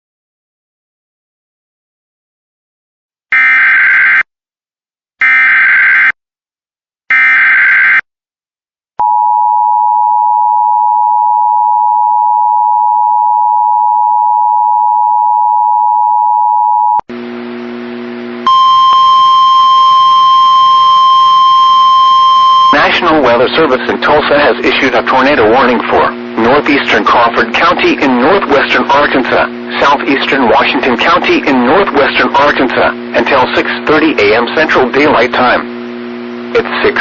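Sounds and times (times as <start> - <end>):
low buzz: 17.1 - 37.0
two-tone alert signal: 18.5 - 23.0.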